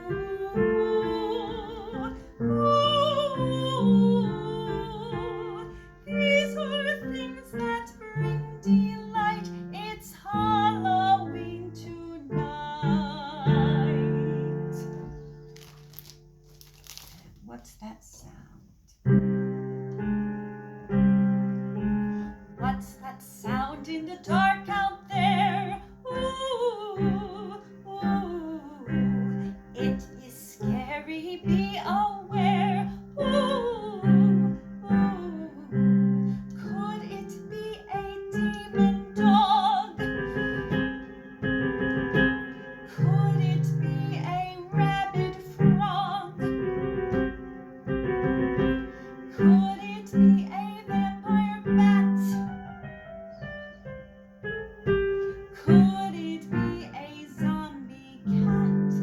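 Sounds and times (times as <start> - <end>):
woman singing: 0.0 - 15.1, 22.6 - 40.9, 42.8 - 47.4, 49.3 - 52.6, 55.4 - 59.0
piano: 0.0 - 18.0, 18.6 - 59.0.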